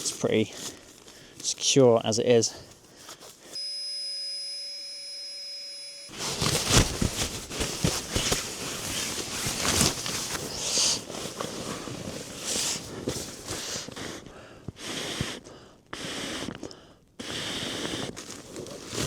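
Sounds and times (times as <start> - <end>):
steady electronic tone: 3.6 - 6.1
rustling with knocks and clicks: 6.1 - 13.7.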